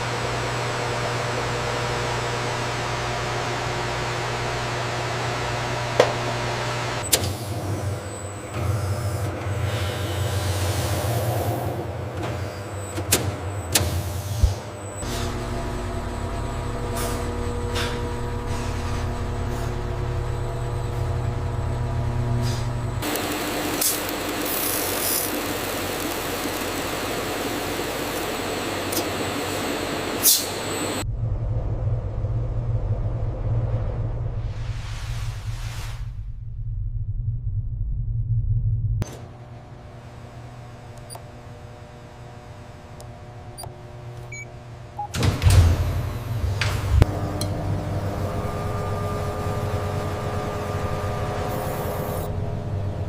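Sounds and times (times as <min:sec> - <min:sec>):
machinery hum: 0:00.0 - 0:53.0
low drone: 0:14.2 - 0:40.1, 0:46.0 - 0:53.0
loud rushing noise with whine: 0:19.8 - 0:36.5.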